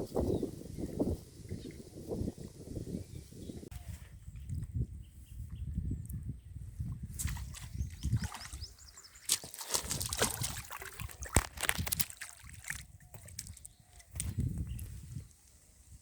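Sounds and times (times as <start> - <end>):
wind rumble on microphone: 0.0 - 9.0, 9.8 - 16.0
water splashing and sloshing: 7.1 - 14.9.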